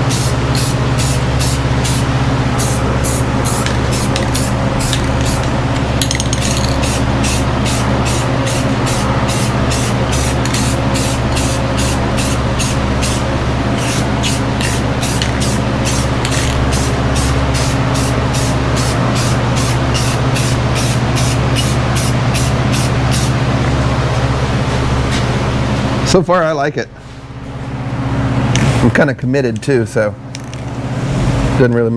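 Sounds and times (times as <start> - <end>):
paint spray hissing in pulses: 0.0 - 5.6, 6.8 - 23.4
steady low hum: 0.0 - 31.9.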